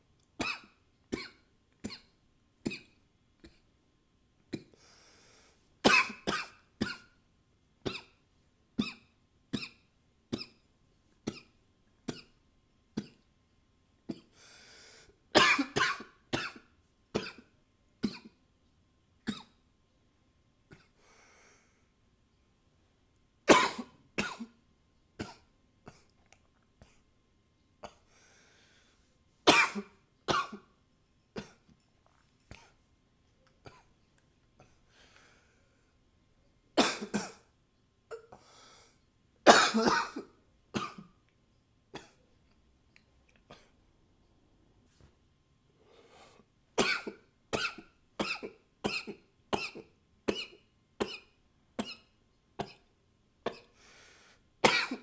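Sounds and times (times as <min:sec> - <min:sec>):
man breathing in: 0:14.4 - 0:15.2, 0:53.8 - 0:54.4
man coughing: 0:15.4 - 0:16.6, 0:23.5 - 0:24.5, 0:29.5 - 0:30.6, 0:39.5 - 0:41.1, 0:54.7 - 0:55.0.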